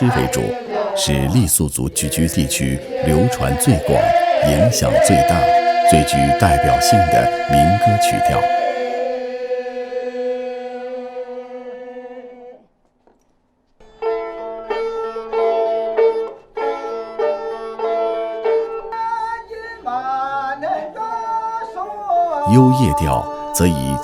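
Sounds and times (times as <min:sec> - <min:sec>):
person singing: 0:00.0 - 0:11.0, 0:19.0 - 0:24.0
voices singing a held chord: 0:00.0 - 0:12.6, 0:22.3 - 0:24.0.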